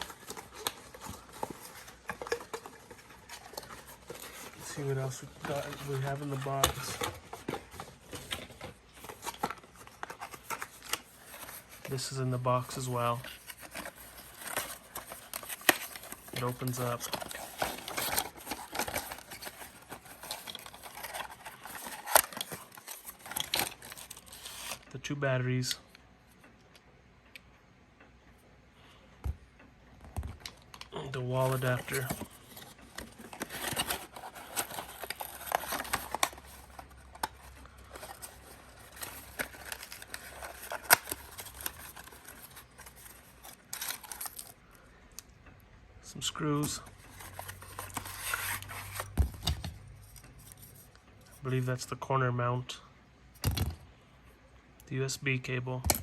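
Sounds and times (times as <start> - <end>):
cardboard rustling and scraping: 0.0 - 24.8, 31.2 - 44.5, 46.4 - 50.9.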